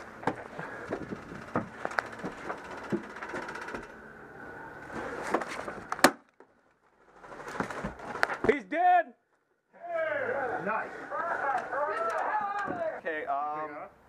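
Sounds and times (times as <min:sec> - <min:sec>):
gear clatter: 0:00.2 - 0:04.0.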